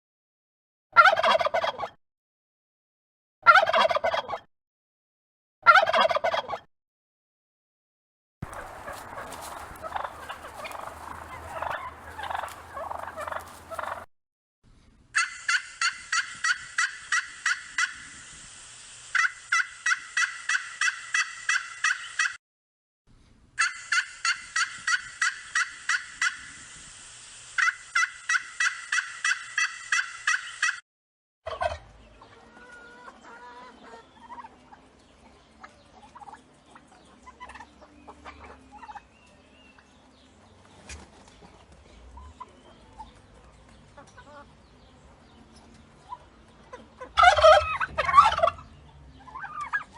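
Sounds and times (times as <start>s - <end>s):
turkeys calling: 1.0s - 1.9s, 3.5s - 4.4s, 5.7s - 6.7s, 8.4s - 14.1s, 15.2s - 18.4s, 19.1s - 22.4s, 23.6s - 26.8s, 27.6s - 30.8s, 31.5s - 34.8s, 35.6s - 39.8s, 40.6s - 43.2s, 43.8s - 44.5s, 45.6s - 49.9s.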